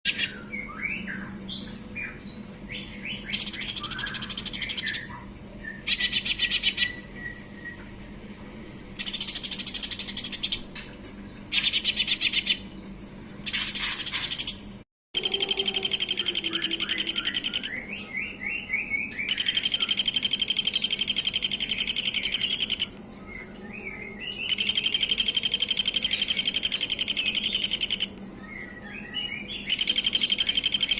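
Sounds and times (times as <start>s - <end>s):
birds trilling: 0.1s - 8.0s, 9.0s - 30.9s
bird whistles: 3.2s - 5.1s.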